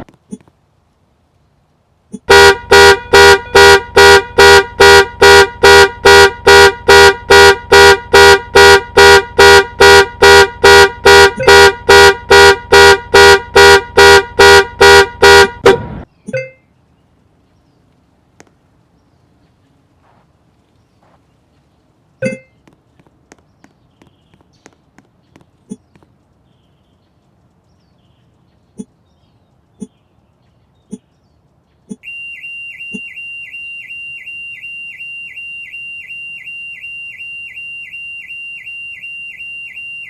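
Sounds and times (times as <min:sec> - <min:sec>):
car horn rapid honks: 0:02.2 - 0:16.0.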